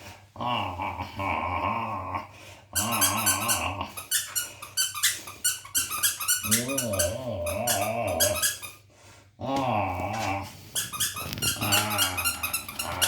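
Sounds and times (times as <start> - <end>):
squeaky toy squeaking: 2.8 - 8.8, 10.8 - 13.0
puppy growling: 6.4 - 8.6, 9.4 - 13.0.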